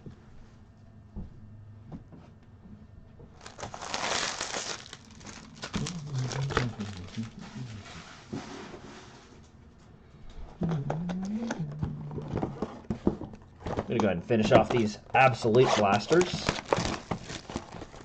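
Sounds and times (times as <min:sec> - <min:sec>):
plastic wrappers crinkling: 0:03.3 - 0:07.8, 0:13.7 - 0:18.0.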